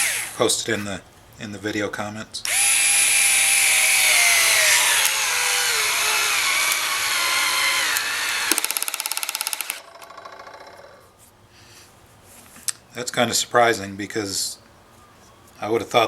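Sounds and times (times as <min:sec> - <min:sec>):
cordless screwdriver motor whining: 0:00.0 - 0:00.4, 0:02.5 - 0:09.8
rapid even clicking: 0:06.4 - 0:10.1.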